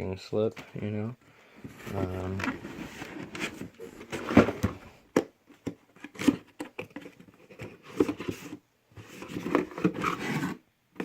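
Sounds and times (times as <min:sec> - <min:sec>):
cardboard box rustling: 0:01.7 - 0:04.9, 0:05.9 - 0:10.6.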